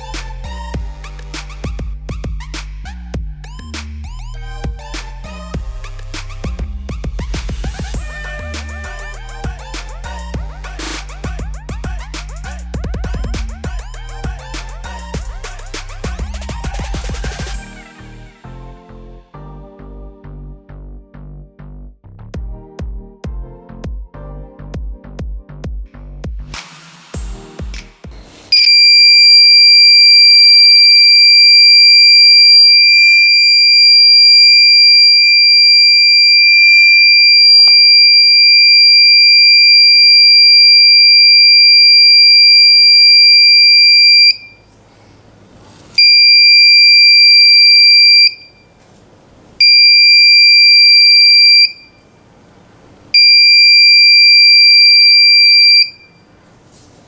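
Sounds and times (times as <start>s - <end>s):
alarm buzzer tone: 8.0s - 11.9s, 28.5s - 44.6s, 46.0s - 48.7s, 49.6s - 52.0s, 53.2s - 56.2s.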